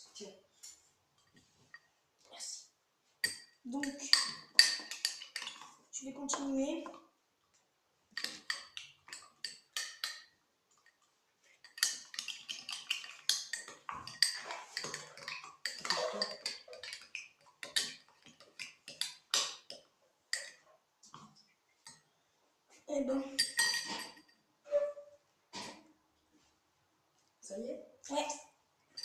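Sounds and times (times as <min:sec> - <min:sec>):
spoon clinking against glass: 0:03.2 - 0:05.6, 0:08.2 - 0:10.3, 0:11.6 - 0:18.0, 0:23.3 - 0:24.4.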